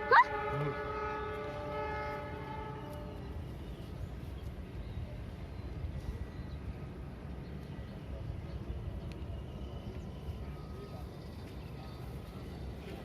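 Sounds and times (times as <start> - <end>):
train horn: 0.0 - 3.5
passing freight train rumble: 0.0 - 13.0.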